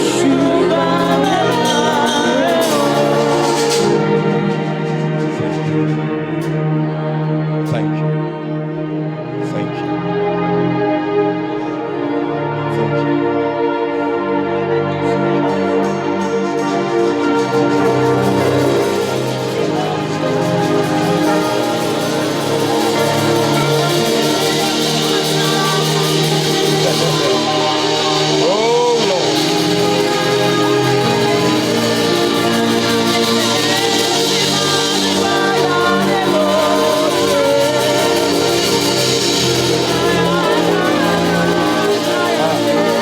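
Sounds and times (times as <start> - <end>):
slow worship music: 0.0 - 43.0.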